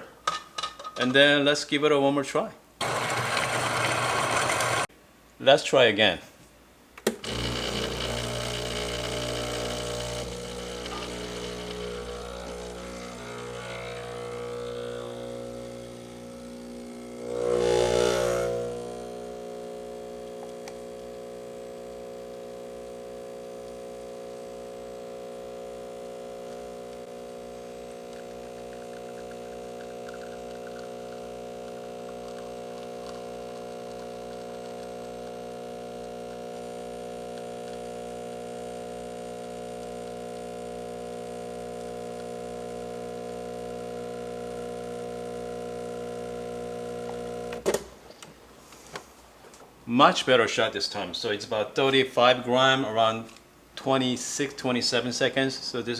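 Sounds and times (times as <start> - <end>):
espresso machine pump humming: 2.8 - 4.9, 7.1 - 47.6.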